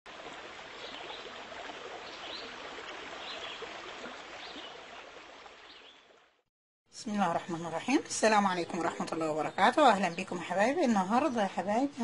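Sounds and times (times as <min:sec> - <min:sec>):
running water: 0:00.1 - 0:06.4.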